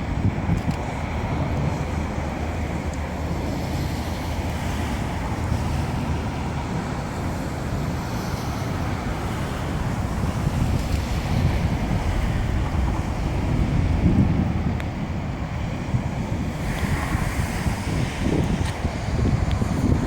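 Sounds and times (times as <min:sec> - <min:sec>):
wind buffeting microphone: 0:00.0 - 0:20.0.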